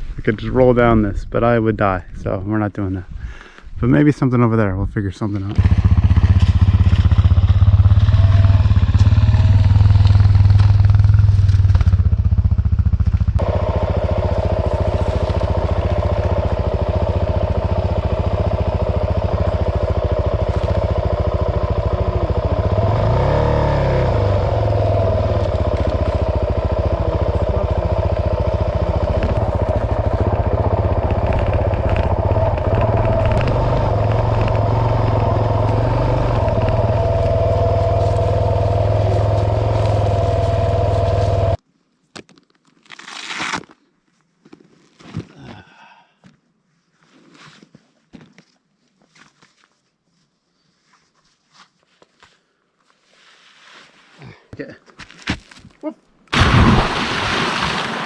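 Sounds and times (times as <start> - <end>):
motorcycle engine running: 5.6 - 41.6.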